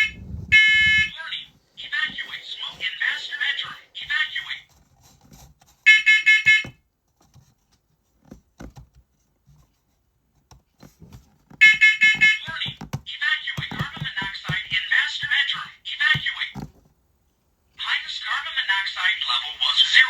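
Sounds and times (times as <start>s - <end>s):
smoke alarm beeping: 0.5s - 1.1s.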